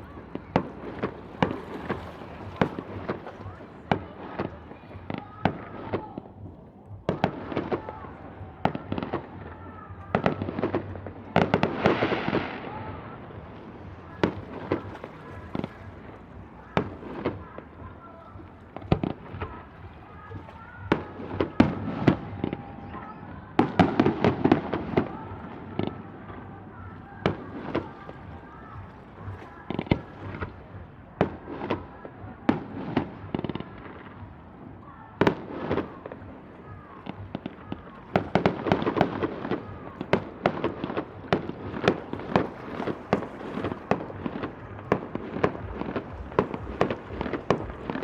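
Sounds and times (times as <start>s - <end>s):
crackling hissing firework shower: 23.6s - 48.0s.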